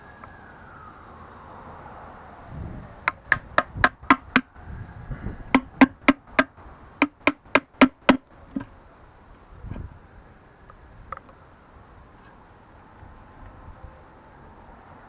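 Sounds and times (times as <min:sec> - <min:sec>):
hammer knocking on metal: 0:03.1 - 0:04.5, 0:05.5 - 0:08.7.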